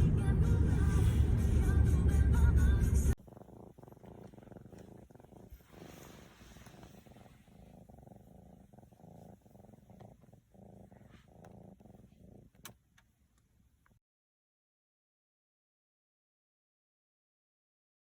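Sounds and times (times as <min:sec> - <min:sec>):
kitten purring: 0:00.4 - 0:13.1.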